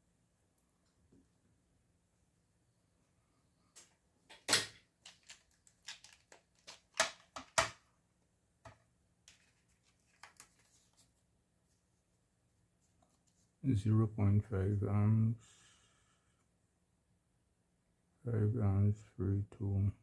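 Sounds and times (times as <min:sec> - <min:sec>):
small hard objects clicking: 0:05.0 - 0:07.8.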